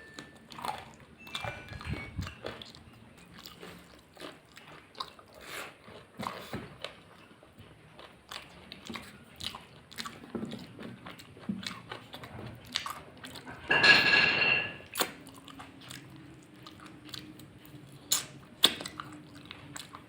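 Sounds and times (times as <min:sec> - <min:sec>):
person chewing food: 0:00.0 - 0:13.7, 0:14.8 - 0:20.0
wet mouth sounds: 0:18.1 - 0:19.9.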